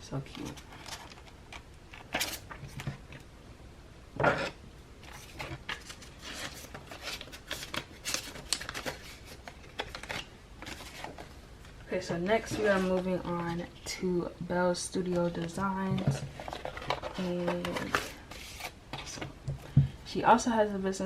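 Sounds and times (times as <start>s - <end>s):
paper rustling and crinkling: 0.2s - 3.2s, 5.0s - 11.8s, 12.4s - 13.6s, 15.0s - 19.4s.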